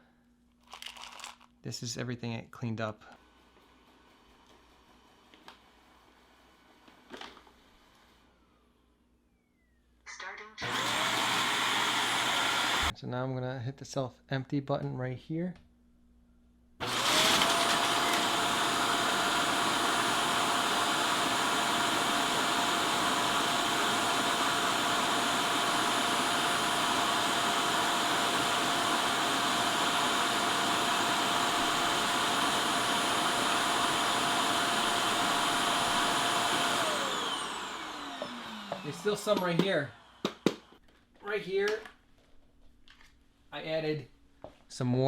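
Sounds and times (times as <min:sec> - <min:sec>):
suction motor whining: 0:10.6 - 0:12.9, 0:16.8 - 0:40.5.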